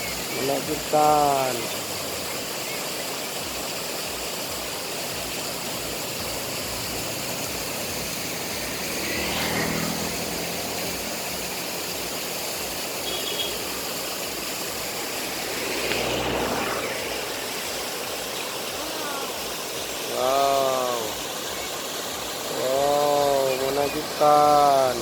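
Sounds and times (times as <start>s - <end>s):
river water rushing: 0.0s - 25.0s.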